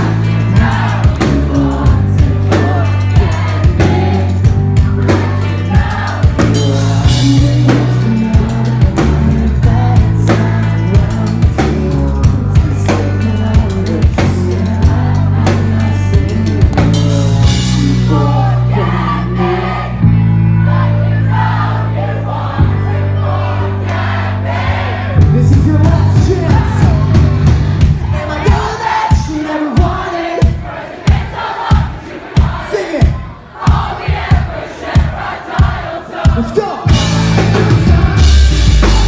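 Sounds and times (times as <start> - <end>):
fast drumming: 0.0 - 18.4, 25.2 - 39.0
person singing: 0.0 - 21.1, 36.3 - 39.0
pop-punk band playing live: 0.0 - 39.0.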